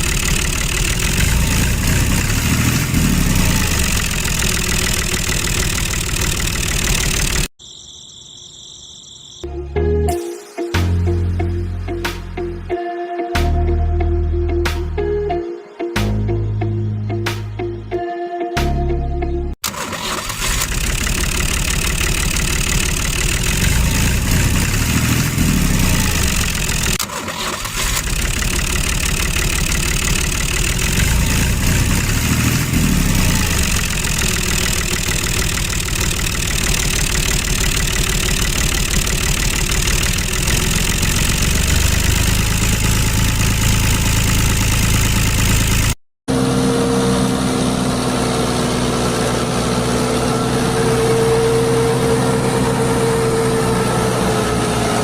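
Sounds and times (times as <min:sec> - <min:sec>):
small engine chugging: 0:00.0 - 0:07.5, 0:19.7 - 0:46.0.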